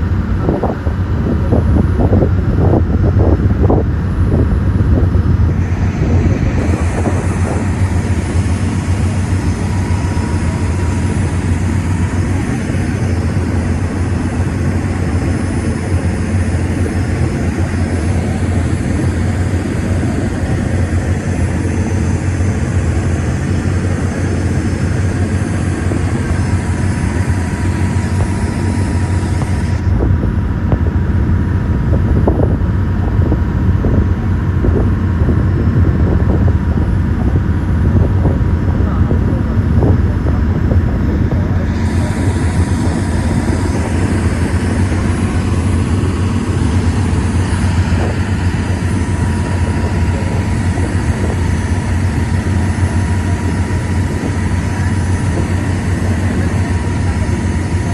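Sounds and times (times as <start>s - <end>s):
vehicle engine drone: 0.0s - 57.9s
wind noise on microphone: 0.0s - 57.9s.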